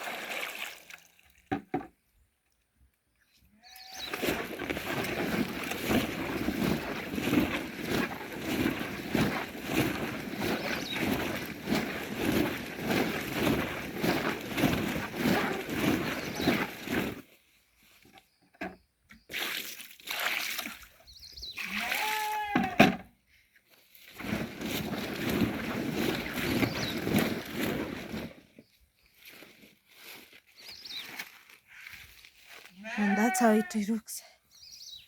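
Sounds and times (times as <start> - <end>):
carrots sloshing in water: 4.1 - 17.2, 19.3 - 21.1.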